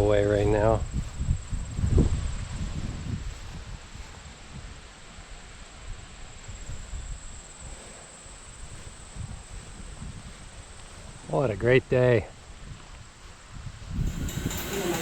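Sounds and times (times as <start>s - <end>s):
crickets trilling: 14.0s - 15.0s.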